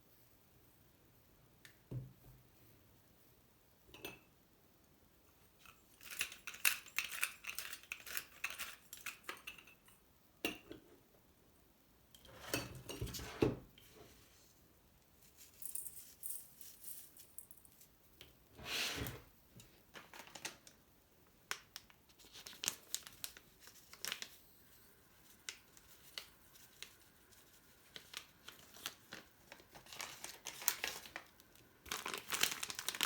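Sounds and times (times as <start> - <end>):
utensils and dishes clattering: 12.2 - 13.4.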